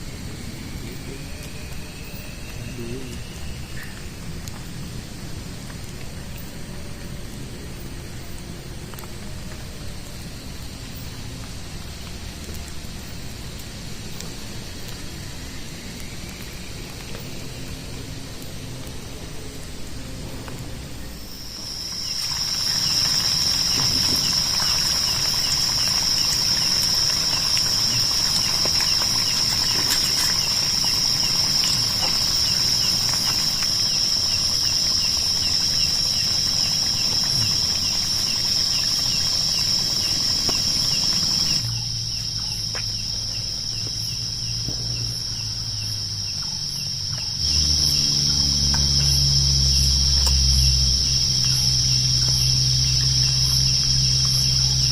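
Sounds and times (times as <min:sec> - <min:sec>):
insects chirring: 0:00.0 - 0:54.9
low hum: 0:47.4 - 0:54.9.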